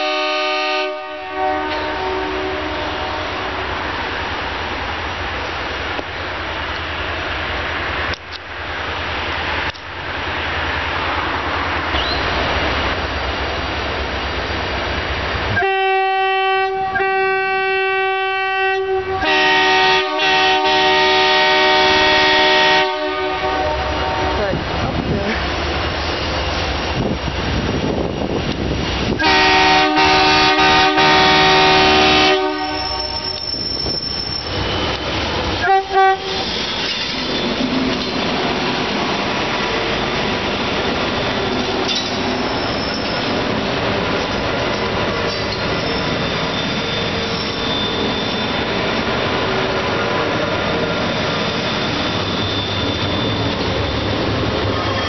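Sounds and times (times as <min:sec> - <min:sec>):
train horn blasts: 0:00.0 - 0:03.8, 0:15.5 - 0:24.7, 0:29.2 - 0:33.6, 0:35.6 - 0:36.5
train rumbling past: 0:00.0 - 0:55.0
wheels squealing: 0:11.9 - 0:12.4, 0:32.5 - 0:35.6, 0:36.2 - 0:55.0.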